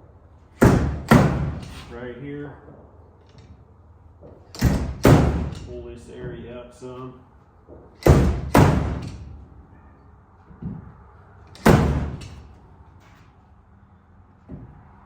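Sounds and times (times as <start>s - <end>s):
slide hammer weight slamming: 0.6s - 1.9s, 4.5s - 5.7s, 8.0s - 9.4s, 11.6s - 12.5s.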